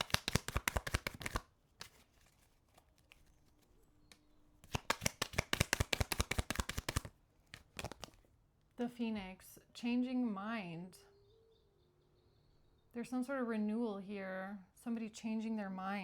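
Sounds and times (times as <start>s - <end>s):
cards being shuffled: 0.0s - 8.3s.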